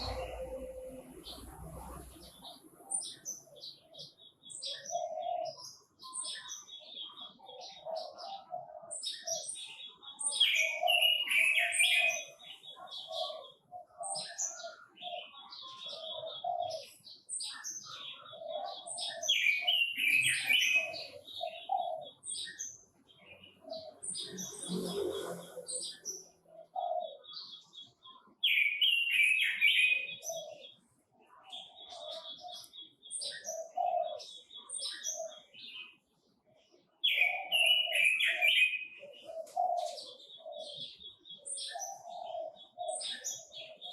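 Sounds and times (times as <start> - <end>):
low cooing notes: 0.0 - 2.2
bird singing warbling phrases: 0.0 - 43.9.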